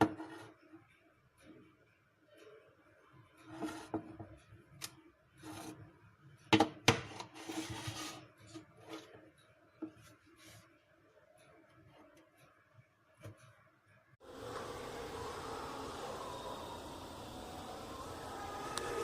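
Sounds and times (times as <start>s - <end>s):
objects rubbing and scraping: 3.5s - 4.1s, 5.4s - 5.9s, 7.2s - 9.2s
faint steady hum: 14.2s - 19.0s.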